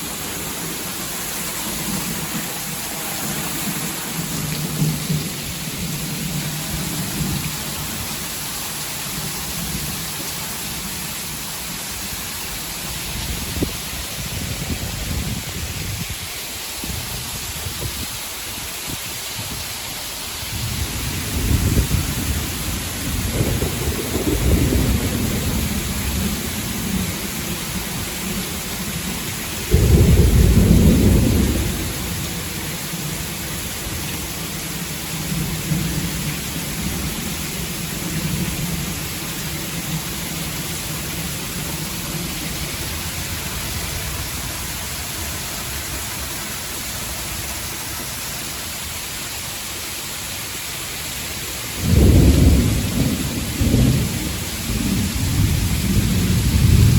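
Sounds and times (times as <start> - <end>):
thunder rumbling: 0.0 - 11.3, 20.5 - 45.4, 51.8 - 56.9
gusty wind: 0.0 - 48.7, 51.4 - 56.9
heavy rain pouring: 0.0 - 56.9.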